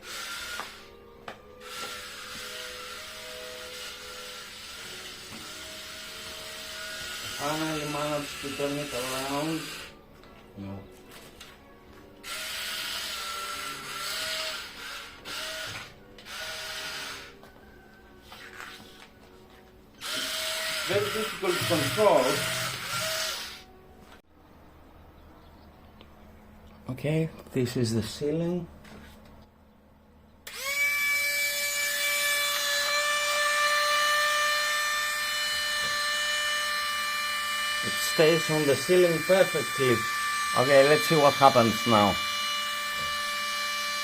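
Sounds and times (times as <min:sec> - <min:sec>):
toy car motors whirring: 0:20.0 - 0:23.7, 0:30.5 - 0:36.8.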